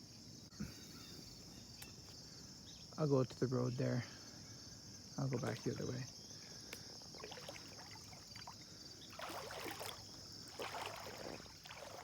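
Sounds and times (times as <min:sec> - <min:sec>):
crickets chirring: 0:00.0 - 0:12.0
footsteps through wet grass: 0:09.1 - 0:12.0.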